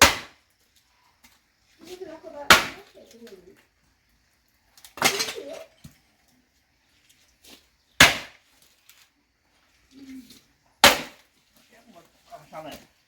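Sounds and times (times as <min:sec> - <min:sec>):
firewood being chopped: 0:00.0 - 0:00.6, 0:02.5 - 0:03.2, 0:08.0 - 0:09.0, 0:10.8 - 0:11.4.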